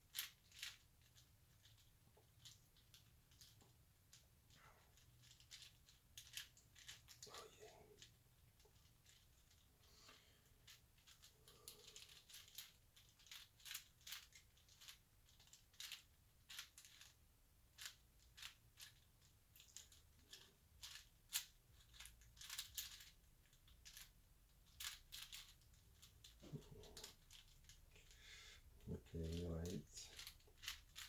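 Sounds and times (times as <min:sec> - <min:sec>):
plastic clicks of puzzle cube: 0:19.6 - 0:27.8.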